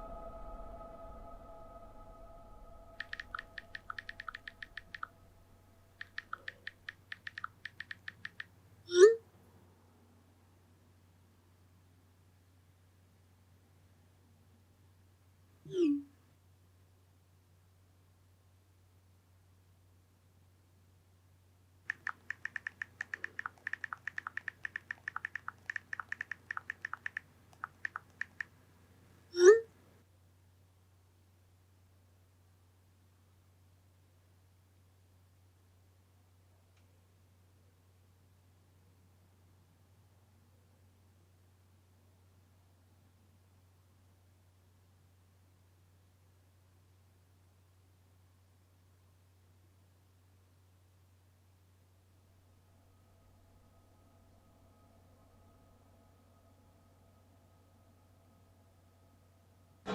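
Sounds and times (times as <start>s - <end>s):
short rising sound: 0.0s - 5.7s
faint steady tone: 0.0s - 59.9s.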